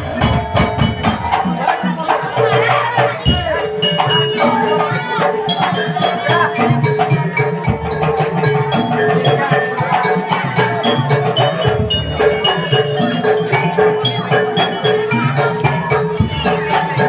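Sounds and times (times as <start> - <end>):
drum beat: 0.0 - 17.0
mallet percussion melody: 0.0 - 17.0.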